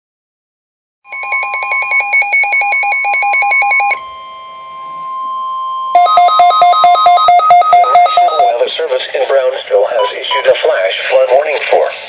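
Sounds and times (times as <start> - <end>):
rapid two-pitch electronic beeping: 1.1 - 8.6, 10.0 - 10.7
steady weather alert tone: 1.1 - 12.0.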